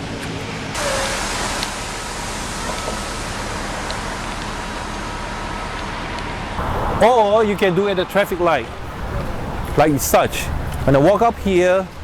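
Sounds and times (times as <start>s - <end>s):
road traffic rush: 0.6s - 12.0s.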